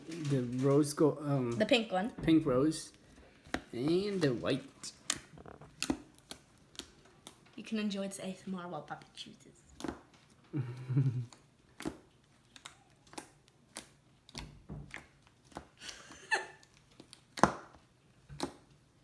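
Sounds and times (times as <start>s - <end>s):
slime squishing with sticky pops: 3.4s - 7.6s, 8.9s - 10.5s, 11.2s - 19.0s.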